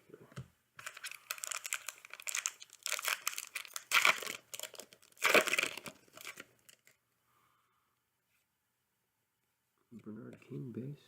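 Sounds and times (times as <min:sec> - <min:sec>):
foil wrapper crinkling: 0:00.8 - 0:07.0.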